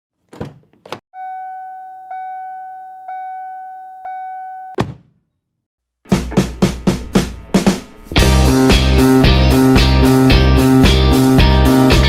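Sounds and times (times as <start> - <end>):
chime-like electronic tone: 1.2 - 4.8.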